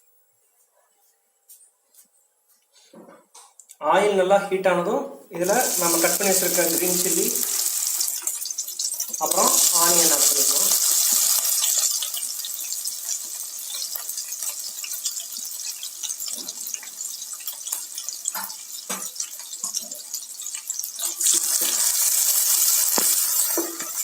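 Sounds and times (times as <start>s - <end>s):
onions sizzling in hot oil: 5.4s - 24.0s
oil popping and crackling: 5.5s - 24.0s.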